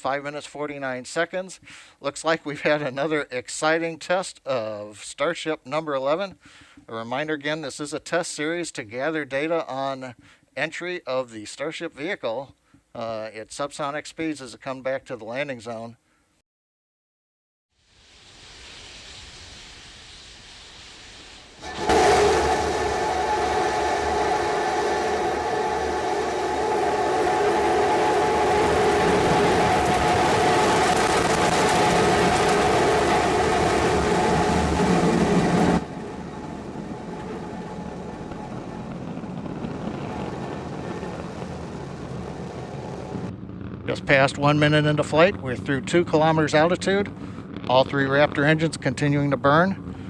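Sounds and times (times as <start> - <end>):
faint steady hiss: 0.0 - 16.4, 17.8 - 21.7
rocket engine rumble: 18.4 - 50.0
droning tones: 21.6 - 44.0.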